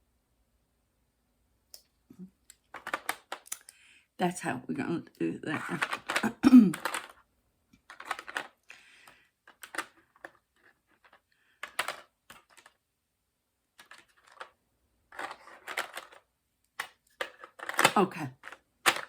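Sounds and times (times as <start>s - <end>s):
craft supplies clicking and rustling: 2.4s - 3.8s, 5.5s - 7.2s, 7.8s - 12.8s, 13.8s - 19.0s.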